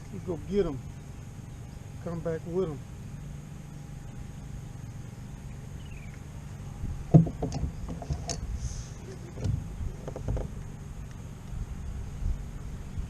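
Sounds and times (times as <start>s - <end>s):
steady low rumble: 0.0s - 13.0s
kayak knocks and rattles: 7.1s - 8.5s, 9.1s - 10.6s.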